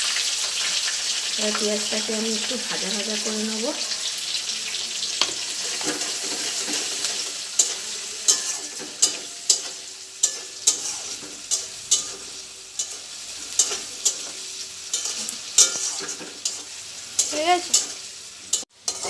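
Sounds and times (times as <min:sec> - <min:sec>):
onion sizzling in hot oil: 0:00.0 - 0:19.0
spatula scraping a pan: 0:05.0 - 0:19.0.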